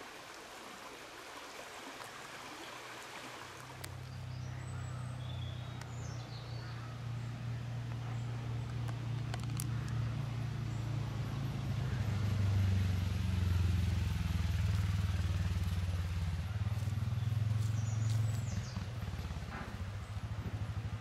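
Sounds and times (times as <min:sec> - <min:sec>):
tractor diesel engine under load: 0:04.8 - 0:21.0.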